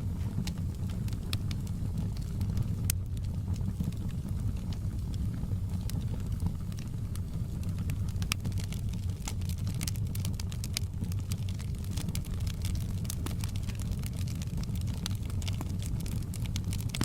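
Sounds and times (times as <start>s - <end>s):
fire popping and snapping: 0.0s - 17.0s
low rumble of flames: 0.0s - 17.0s.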